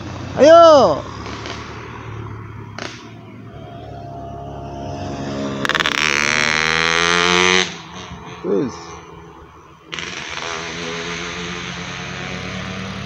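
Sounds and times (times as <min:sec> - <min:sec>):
bus engine running: 0:00.0 - 0:13.0.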